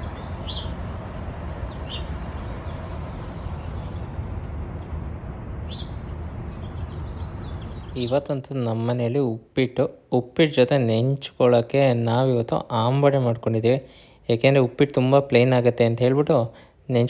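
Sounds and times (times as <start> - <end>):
steady low rumble: 0.0 - 16.9
high bird chirps: 0.1 - 0.8, 5.7 - 8.4.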